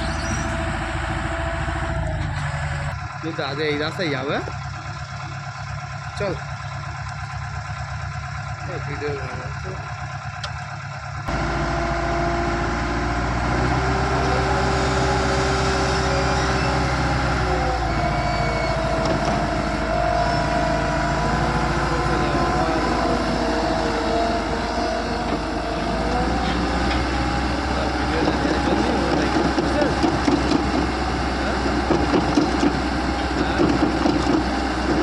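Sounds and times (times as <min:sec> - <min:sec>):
whine shifting in pitch: 0:00.0 - 0:03.0, 0:11.2 - 0:33.9
diesel engine running: 0:00.0 - 0:35.0.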